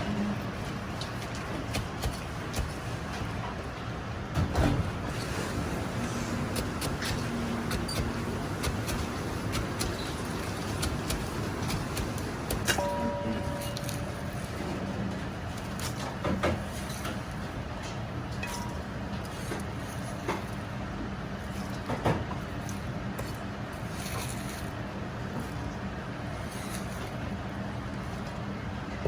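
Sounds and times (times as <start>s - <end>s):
kitchen background roar: 0.0s - 29.0s
utensils clinking and knocking: 6.5s - 14.9s.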